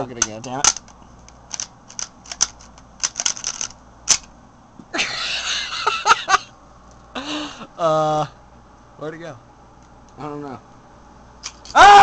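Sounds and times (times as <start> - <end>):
plastic pistol parts clicking: 0.2 - 4.3.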